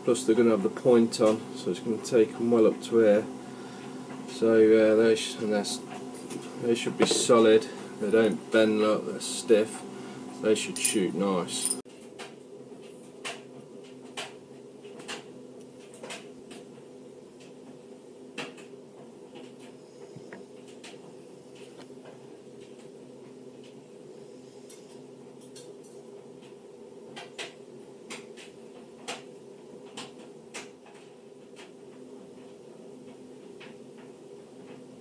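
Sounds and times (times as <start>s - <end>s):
steady low hum: 0.0s - 11.8s.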